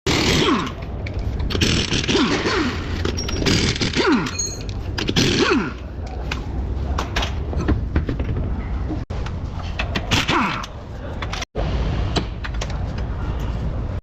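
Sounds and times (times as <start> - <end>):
tool scraping metal with squeak: 2.9 - 5.4.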